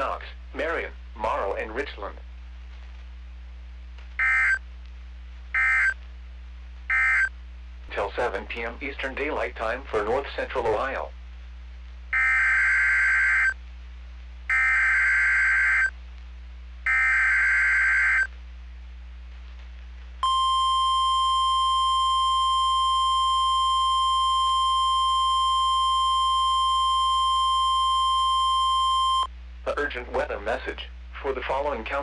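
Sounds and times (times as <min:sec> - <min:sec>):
piercing warning alarm tone: 0:04.2 - 0:04.6, 0:05.6 - 0:06.0, 0:06.9 - 0:07.3, 0:12.2 - 0:13.6, 0:14.5 - 0:15.9, 0:16.9 - 0:18.3, 0:20.2 - 0:29.3.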